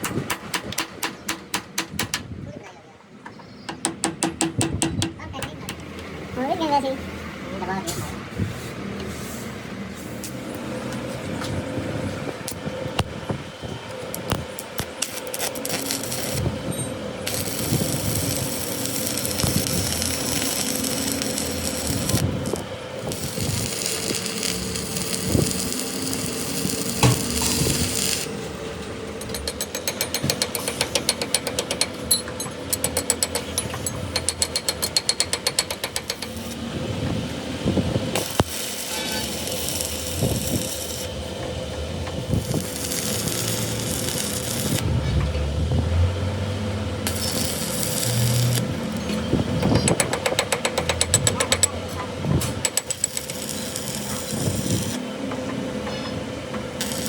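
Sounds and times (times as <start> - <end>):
steady hum: 9.6 - 49.9
ratchet clicking: 14.6 - 28.3, 29.2 - 36.6, 42.4 - 44.8, 47.1 - 51.8, 52.6 - 55.0
hissing: 17.2 - 28.4, 42.2 - 44.8, 47.0 - 49.0.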